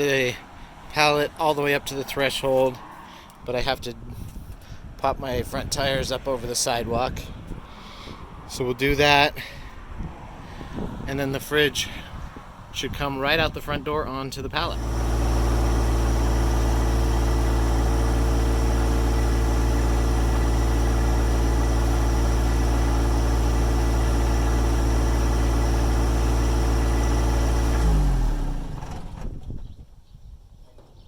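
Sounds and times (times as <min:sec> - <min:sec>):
tractor diesel engine running: 0:14.7 - 0:29.5.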